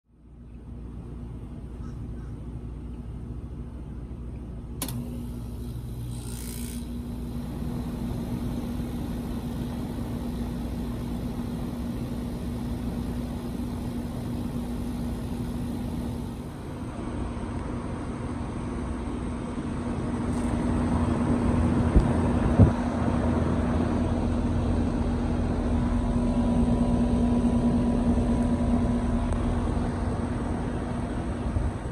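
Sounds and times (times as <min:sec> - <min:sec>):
air conditioner humming: 0:00.1 - 0:31.9
air conditioner click: 0:04.4 - 0:08.5.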